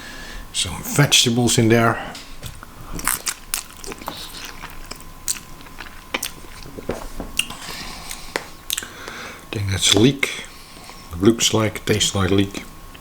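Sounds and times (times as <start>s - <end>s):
chewing noodles with mouth clicks: 2.6s - 9.0s.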